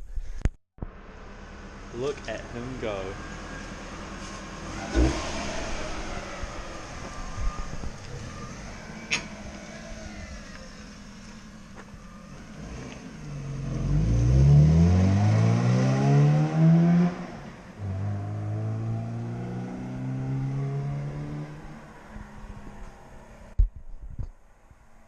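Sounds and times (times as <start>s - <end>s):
vehicle engine revving: 1.1s - 23.6s.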